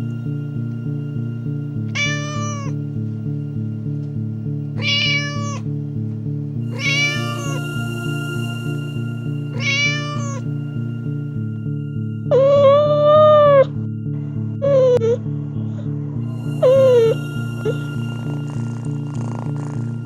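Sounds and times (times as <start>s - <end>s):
background music: 0.0s - 20.0s
cat meowing: 2.0s - 2.8s, 4.8s - 5.7s, 6.7s - 7.6s, 9.5s - 10.4s.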